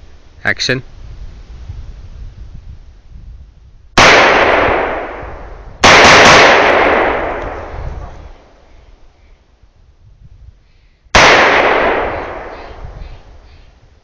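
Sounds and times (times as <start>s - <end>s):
rifle shots echoing: 4.0s - 8.5s, 11.1s - 12.8s.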